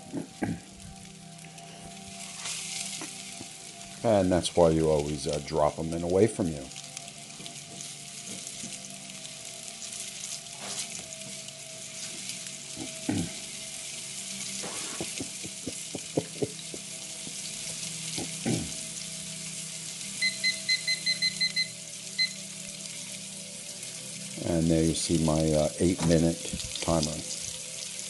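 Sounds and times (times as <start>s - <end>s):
fish sizzling in skillet: 0.0s - 28.0s
kitchen timer beeps: 20.2s - 22.4s.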